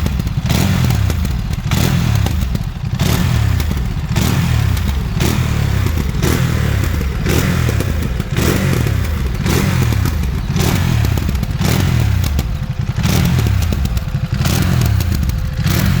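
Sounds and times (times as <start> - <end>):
motorcycle engine revving: 0.0 - 16.0.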